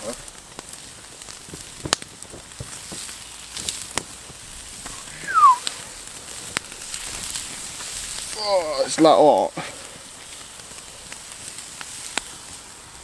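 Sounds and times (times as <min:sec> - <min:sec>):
burgers sizzling over fire: 0:00.0 - 0:13.0
fire crackling and popping: 0:00.0 - 0:13.0
high falling squeak: 0:05.0 - 0:05.6.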